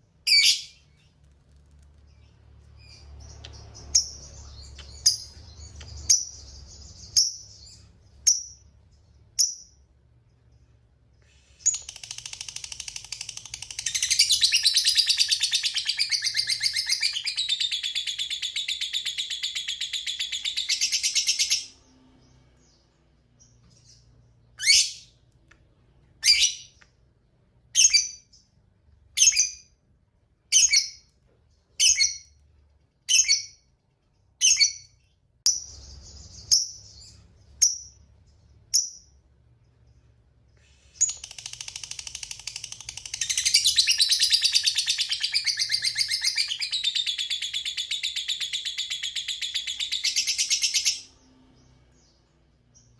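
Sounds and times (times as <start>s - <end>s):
lovebird chirps and chattering trill: 2.1s - 8.7s, 11.5s - 21.8s, 30.5s - 31.1s, 31.8s - 32.4s, 33.1s - 33.7s, 34.4s - 38.0s, 41.0s - 52.9s.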